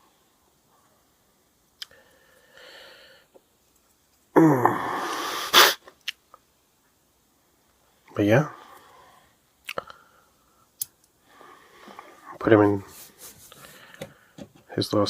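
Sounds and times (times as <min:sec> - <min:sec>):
sharp blast of breath: 0:04.8 - 0:05.8.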